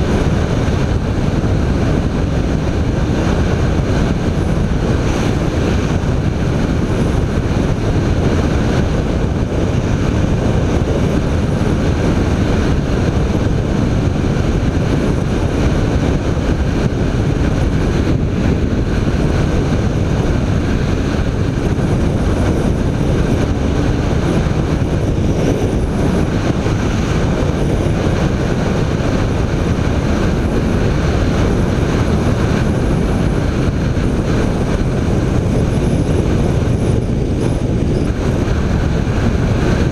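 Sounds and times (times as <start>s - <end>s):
motorcycle engine running: 0.0s - 39.9s
wind rush on microphone: 0.0s - 39.9s.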